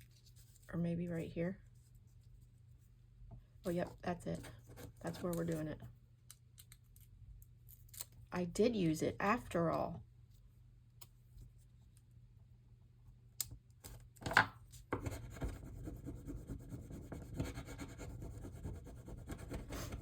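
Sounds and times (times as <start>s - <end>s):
paper rubbing and scratching: 15.0s - 20.0s.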